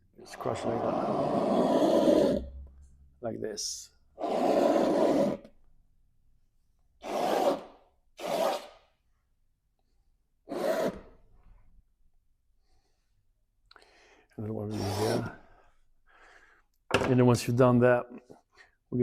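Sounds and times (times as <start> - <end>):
palette knife scratching paint: 14.7 - 15.3.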